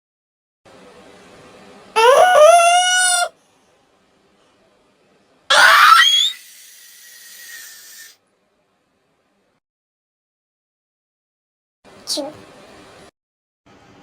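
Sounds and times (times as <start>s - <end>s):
cartoon sneeze with squeal: 2.0s - 3.3s, 5.5s - 8.2s.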